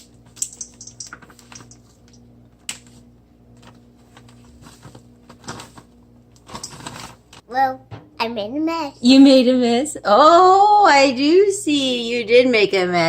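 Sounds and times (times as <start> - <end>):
utensils tapping mixing bowl: 0.0 - 2.8.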